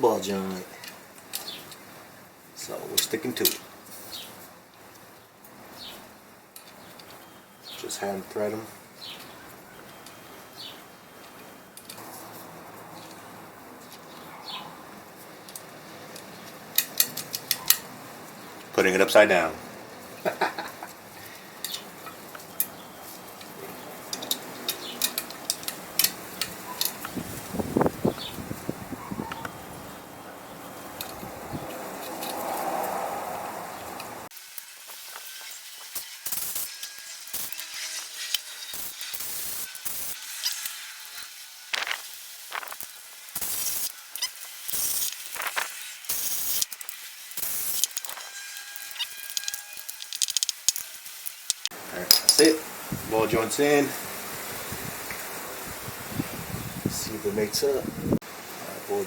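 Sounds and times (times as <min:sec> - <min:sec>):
air tool hissing bursts: 0:34.8 - 0:43.9, 0:44.6 - 0:51.7
metallic clicks of bolts: 0:49.2 - 0:52.5.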